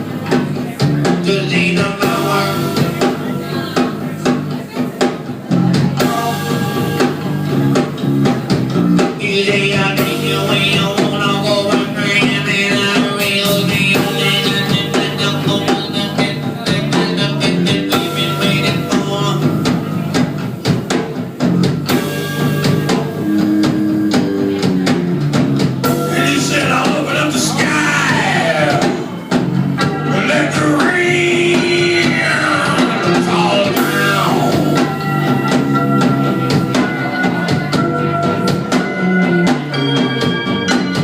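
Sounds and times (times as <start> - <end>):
drum kit: 0.0 - 41.0
guitar playing: 0.0 - 41.0
swooping lead line: 25.8 - 40.9.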